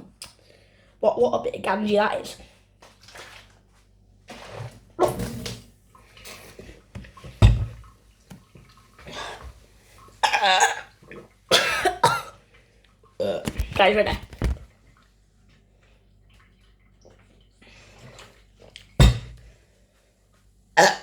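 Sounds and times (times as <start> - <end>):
deep burp: 10.2 - 12.4, 20.8 - 21.0
person coughing: 11.5 - 12.4.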